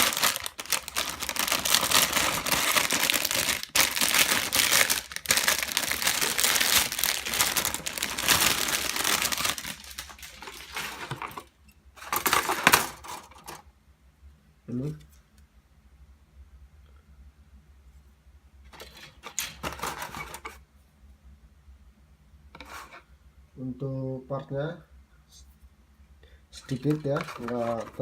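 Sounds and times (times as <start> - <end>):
plastic bags crinkling: 0.0 - 13.6, 18.8 - 20.5, 26.6 - 28.0.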